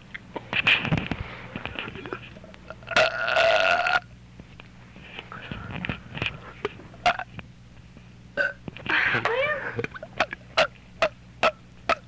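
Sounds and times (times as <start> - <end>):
short burp: 2.8 - 4.0, 8.4 - 8.6.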